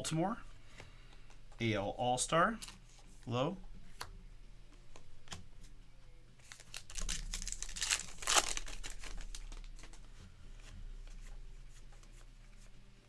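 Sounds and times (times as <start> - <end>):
packaging crinkling and rustling: 6.4 - 10.1.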